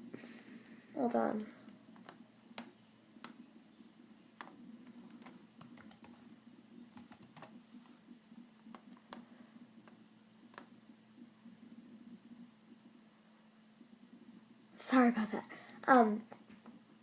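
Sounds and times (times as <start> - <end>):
low steady hum: 0.0 - 17.0
keyboard typing clicks: 4.4 - 7.6.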